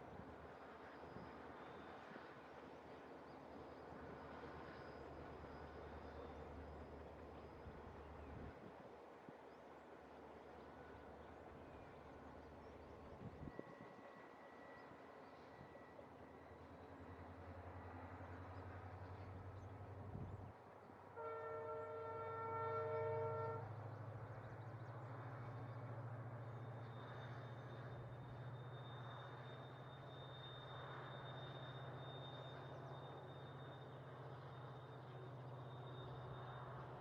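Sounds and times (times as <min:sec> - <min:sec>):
locomotive engine humming: 0:00.0 - 0:37.0
train horn blast: 0:21.1 - 0:23.8.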